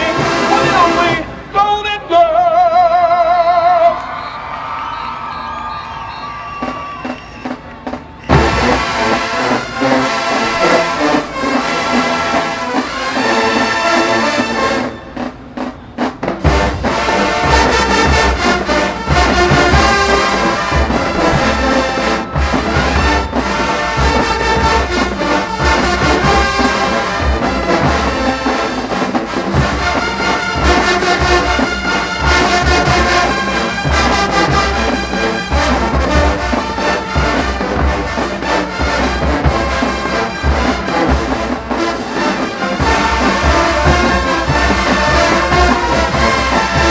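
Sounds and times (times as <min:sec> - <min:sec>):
marching band brass playing: 0:00.0 - 0:46.9.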